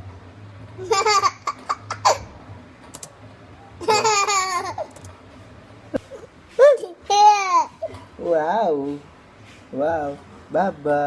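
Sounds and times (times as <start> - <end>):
young child laughing: 0.8 - 2.3, 3.8 - 5.0.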